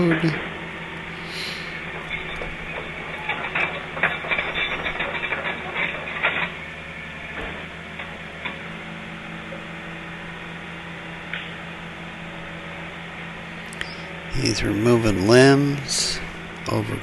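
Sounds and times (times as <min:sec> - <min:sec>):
construction machine engine humming: 0:00.0 - 0:17.0
clattering and cracking of wood: 0:02.0 - 0:06.7.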